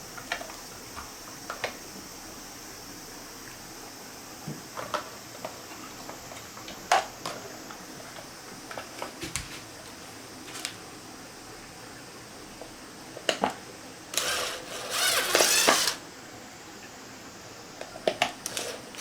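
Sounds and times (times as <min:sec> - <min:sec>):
small parts clicking and tapping: 0:14.2 - 0:16.0, 0:18.2 - 0:19.0.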